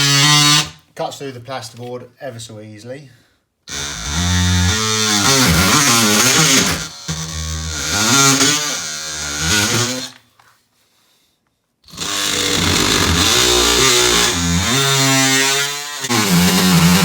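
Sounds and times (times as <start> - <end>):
oscillating multi-tool buzzing: 3.7 - 10.2, 11.9 - 17.0.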